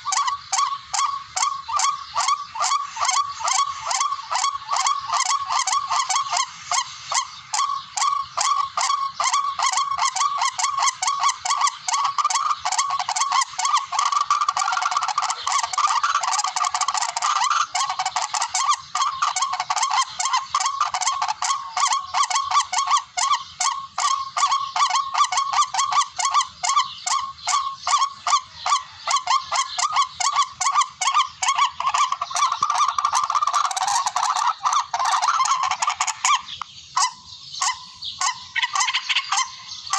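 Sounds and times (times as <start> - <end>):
rail bird call rapid notes: 0.0 - 39.9.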